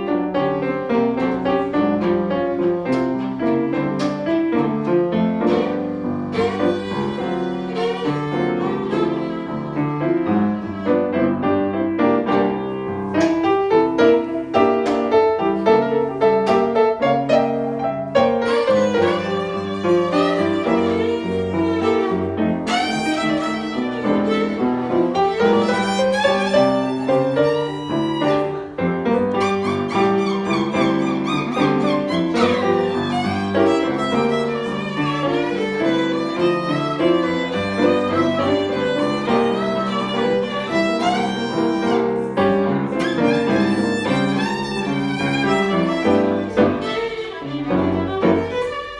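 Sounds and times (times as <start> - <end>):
piano chords: 0.0 - 48.9
blues fiddle lead line: 5.4 - 11.0, 18.2 - 48.9.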